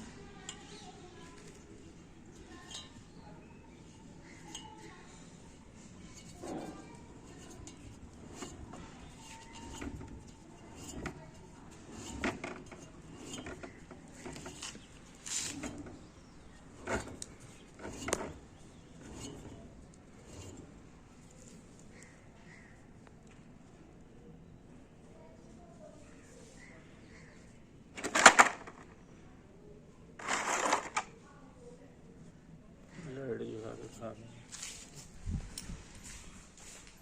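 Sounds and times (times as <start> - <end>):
hard objects clinking and knocking: 2.3 - 20.7, 28.0 - 28.9, 30.2 - 31.1.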